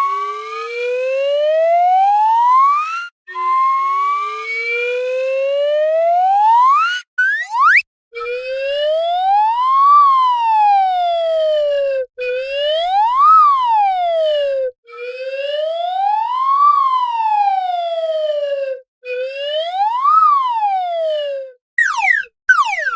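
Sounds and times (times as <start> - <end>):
slide whistle swoops: 6.7 - 8.4, 21.8 - 22.9.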